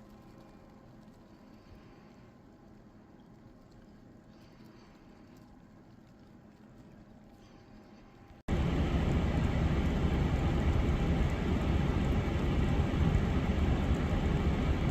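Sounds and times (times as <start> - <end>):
loud steady rumbling: 7.4 - 14.9.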